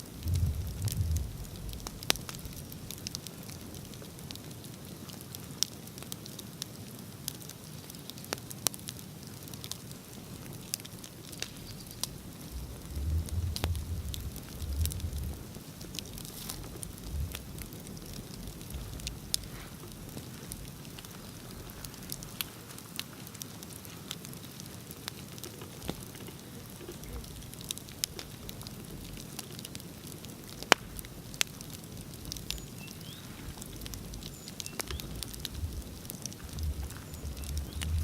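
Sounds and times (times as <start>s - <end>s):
low steady rumble: 0.0s - 3.2s, 10.3s - 22.6s, 25.8s - 38.0s
bonfire crackling: 0.0s - 38.0s.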